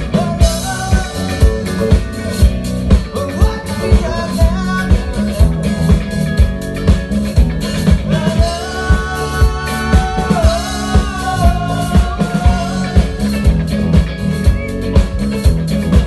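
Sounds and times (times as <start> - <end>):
drum kit beat: 0.0 - 16.0
live funk-rock band playing: 0.0 - 16.0.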